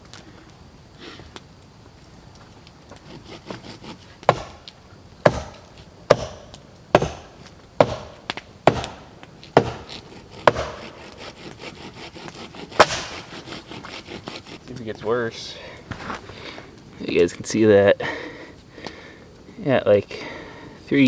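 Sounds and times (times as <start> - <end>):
axe chopping wood: 3.1 - 14.6.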